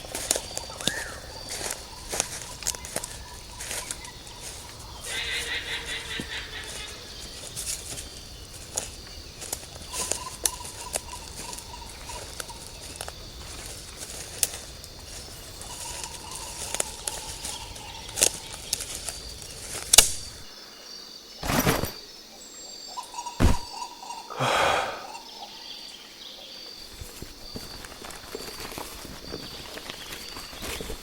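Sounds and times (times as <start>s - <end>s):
bird call: 0.0s - 8.0s, 9.8s - 13.7s, 22.9s - 26.5s
high insect drone: 0.0s - 31.0s
small snaps: 19.7s - 20.5s.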